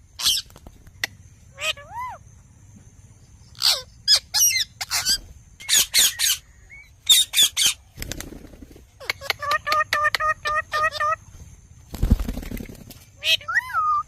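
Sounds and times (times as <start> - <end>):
parakeet squawking: 1.5 - 2.2, 3.6 - 6.4.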